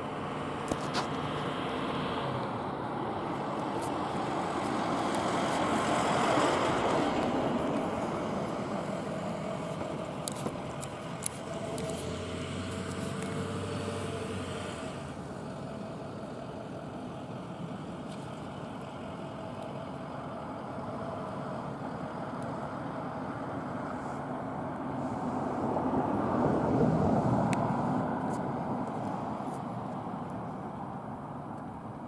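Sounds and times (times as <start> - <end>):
low engine hum: 0.0 - 32.0
vehicle driving by: 3.8 - 15.6.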